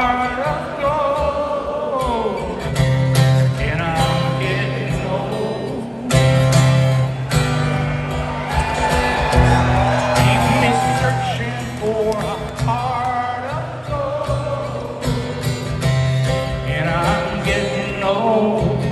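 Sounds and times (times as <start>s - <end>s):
strummed acoustic guitar: 0.0s - 18.9s
live rock band music: 6.2s - 12.8s.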